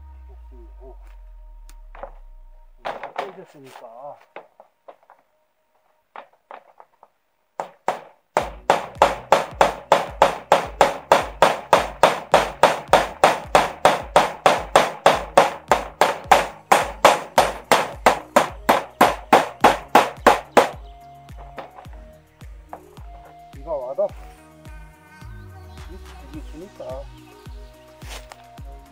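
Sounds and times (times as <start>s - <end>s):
hammer striking rapidly: 2.8s - 3.4s, 7.6s - 23.1s.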